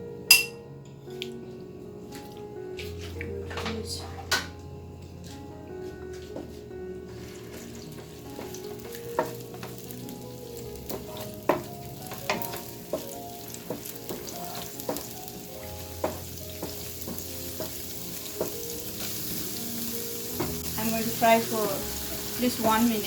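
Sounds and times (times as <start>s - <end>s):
sauce sizzling in a pan: 7.1s - 23.0s.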